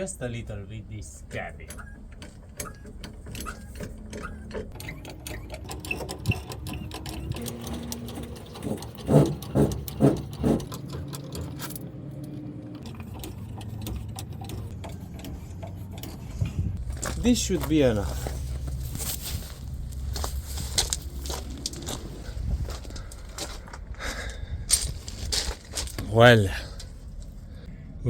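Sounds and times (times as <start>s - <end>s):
hydraulic pump clicking strokes: 1.6s - 11.5s.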